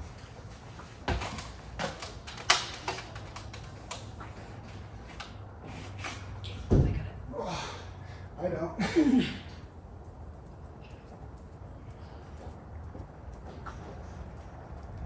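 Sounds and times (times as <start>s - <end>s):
metal roof rack clicks and knocks: 1.0s - 4.1s.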